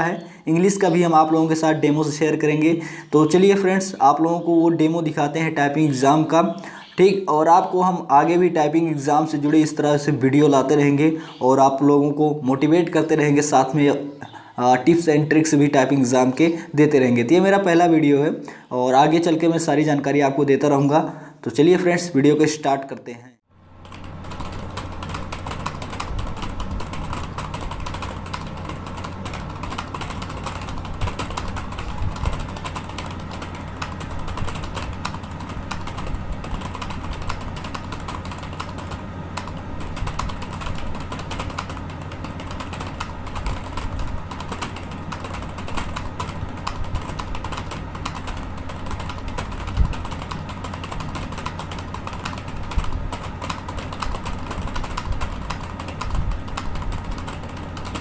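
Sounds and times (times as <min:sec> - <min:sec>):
fast typing on keyboard: 0:00.0 - 0:04.4, 0:23.8 - 0:58.0
steady low hum: 0:00.0 - 0:22.4, 0:23.6 - 0:58.0.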